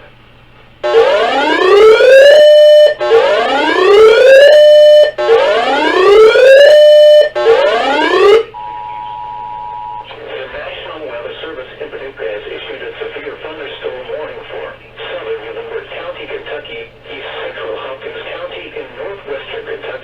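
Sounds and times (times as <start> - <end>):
two-tone alert signal: 0.8 - 10.0
rising electronic alert whoop: 0.9 - 8.5.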